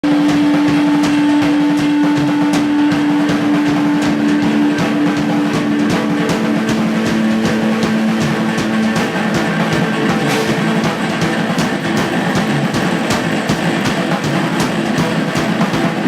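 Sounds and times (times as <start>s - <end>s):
sustained low bass note: 0.0s - 12.4s
drum kit beat: 0.0s - 16.0s.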